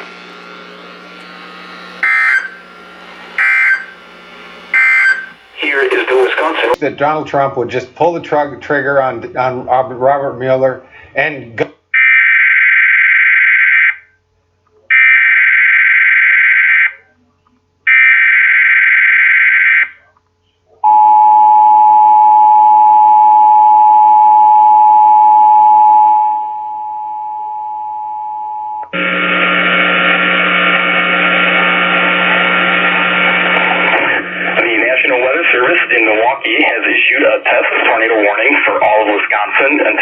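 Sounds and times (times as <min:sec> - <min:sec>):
buzzy steady tone: 0:00.0 - 0:06.8, 0:28.9 - 0:39.9
screechy digital data tones: 0:01.9 - 0:06.8
two-tone alert signal: 0:02.0 - 0:02.6, 0:03.4 - 0:04.0, 0:04.7 - 0:05.4, 0:20.8 - 0:29.0.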